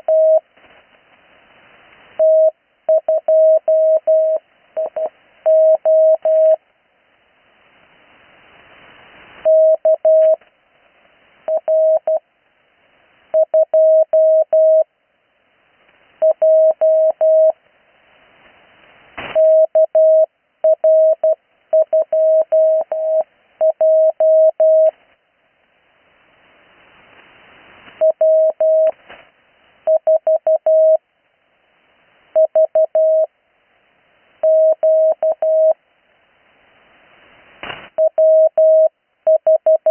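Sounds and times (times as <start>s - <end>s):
morse code beeps: 0.0s - 0.4s, 2.2s - 6.6s, 9.4s - 10.4s, 11.5s - 12.2s, 13.4s - 14.9s, 16.2s - 17.6s, 19.4s - 24.9s, 28.0s - 28.9s, 29.9s - 31.0s, 32.4s - 33.3s, 34.4s - 35.8s, 38.0s - 39.9s
radio band hiss: 17.9s - 19.4s, 36.5s - 38.0s.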